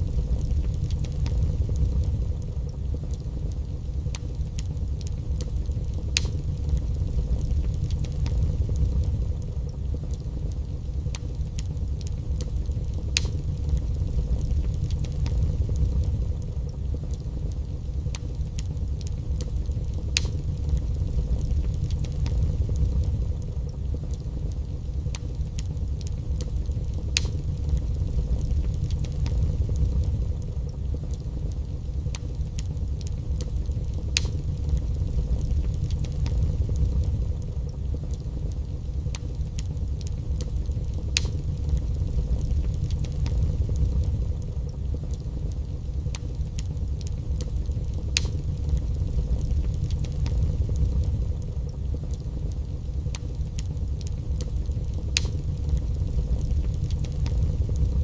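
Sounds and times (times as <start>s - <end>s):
fire crackling and popping: 0.0s - 58.0s
fire rumbling in fireplace: 0.0s - 58.0s.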